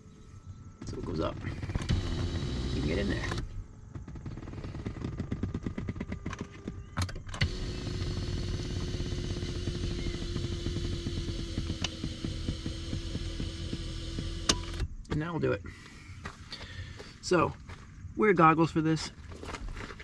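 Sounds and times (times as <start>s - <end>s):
electric seat motor: 0.8s - 15.0s.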